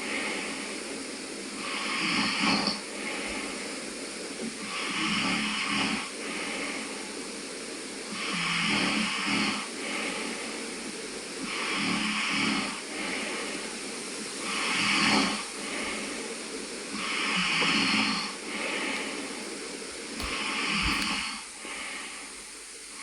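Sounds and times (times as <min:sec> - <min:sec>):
soft breath: 0:17.0 - 0:23.0.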